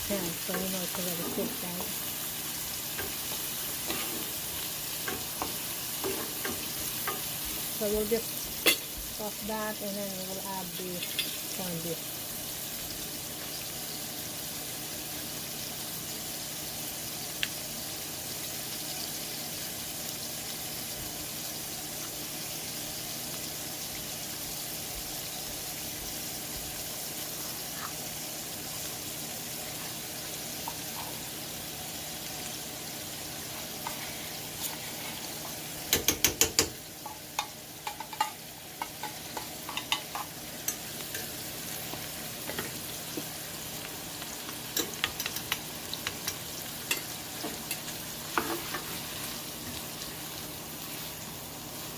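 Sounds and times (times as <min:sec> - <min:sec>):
food sizzling in a pan: 0:00.0 - 0:51.9
utensil tapping a pan: 0:35.9 - 0:40.3.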